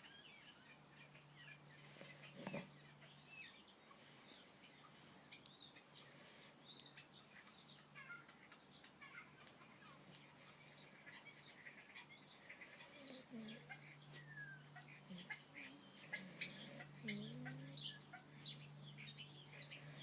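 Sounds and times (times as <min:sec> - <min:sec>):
puppy snoring faintly: 0:01.7 - 0:02.8, 0:03.9 - 0:06.8, 0:12.6 - 0:14.3, 0:15.0 - 0:17.9, 0:19.5 - 0:20.0.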